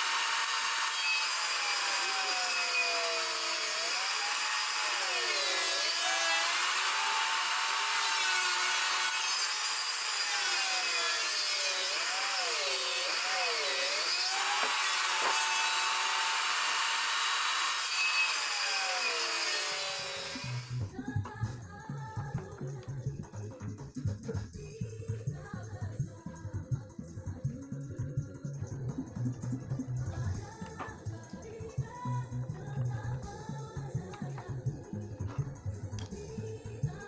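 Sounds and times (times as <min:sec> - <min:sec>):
table saw cutting wood: 0:00.0 - 0:20.8.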